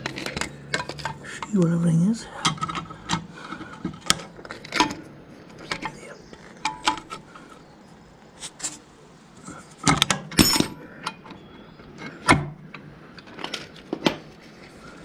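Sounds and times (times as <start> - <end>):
steel parts clinking: 10.3 - 11.2.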